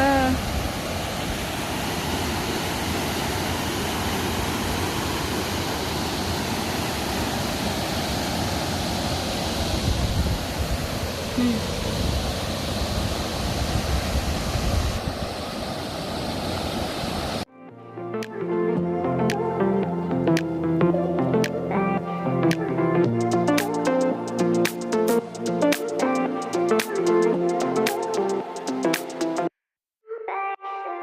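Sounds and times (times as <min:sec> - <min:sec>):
waterfall roaring: 0:00.0 - 0:17.4.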